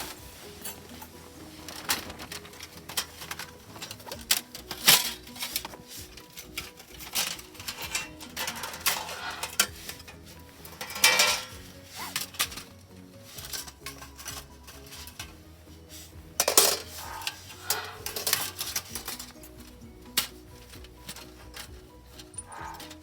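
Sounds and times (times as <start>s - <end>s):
soft background music: 0.0s - 23.0s
irregular clicks and knocks: 16.3s - 23.0s.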